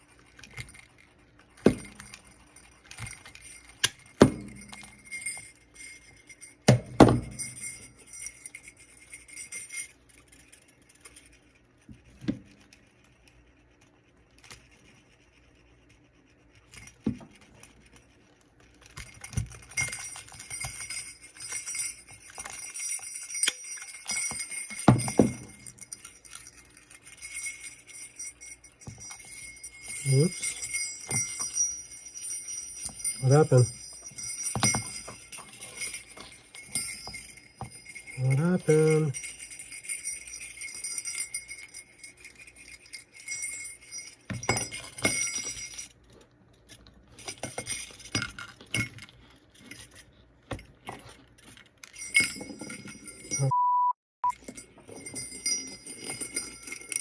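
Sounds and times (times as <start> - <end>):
sleigh bells jingling: 1.7 - 11.3, 19.0 - 45.9, 51.8 - 53.6, 54.2 - 57.0.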